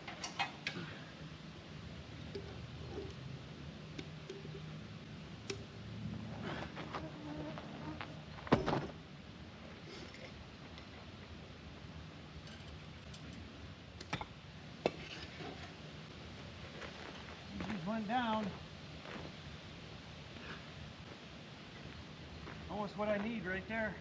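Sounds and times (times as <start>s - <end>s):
flying insects buzzing: 6.2s - 8.5s.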